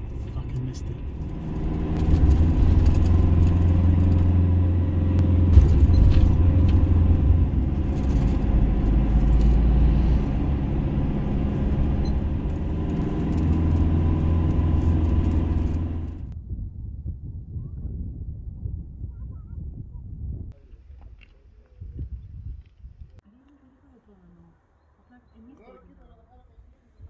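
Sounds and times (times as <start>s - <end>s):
vehicle engine hum and road rumble: 0.0s - 16.4s.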